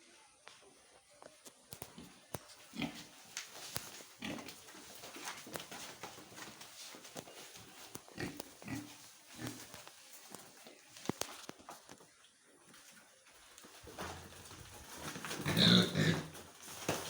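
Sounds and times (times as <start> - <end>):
pigs grunting: 8.2 - 9.6, 15.2 - 16.4.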